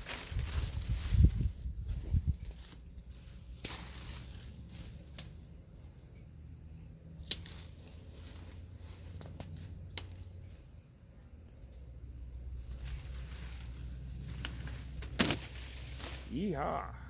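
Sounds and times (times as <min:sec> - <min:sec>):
branches rustling: 0:00.0 - 0:06.2, 0:07.2 - 0:10.2, 0:12.5 - 0:16.9.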